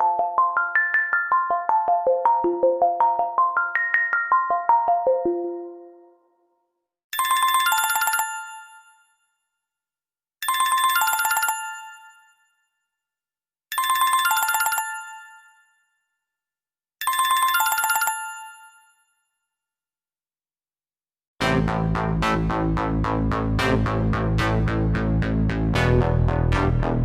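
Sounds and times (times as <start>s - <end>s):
electronic phone ringtone trill: 0.0s - 5.9s.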